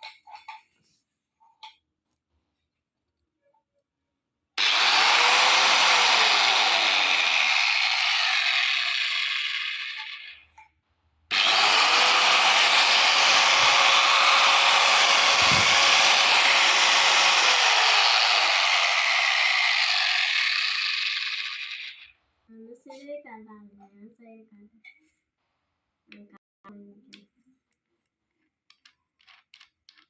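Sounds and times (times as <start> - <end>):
angle grinder whirring: 4.6 - 10.5, 11.3 - 22.1.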